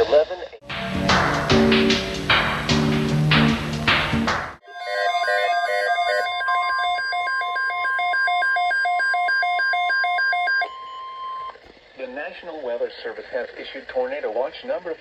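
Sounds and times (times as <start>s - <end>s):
steady alert tone: 4.6s - 9.3s
electronic beeps at several pitches: 4.7s - 11.6s.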